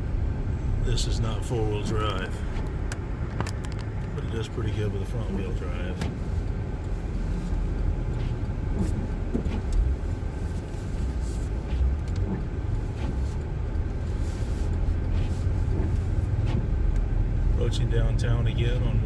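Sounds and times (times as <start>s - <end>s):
car engine and tyres rumbling: 0.0s - 19.0s
faint clicks and knocks: 1.8s - 4.2s.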